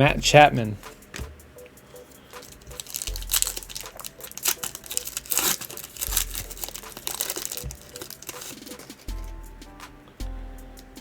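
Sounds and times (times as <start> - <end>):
plastic wrapper crinkling and tearing: 2.3 - 9.1.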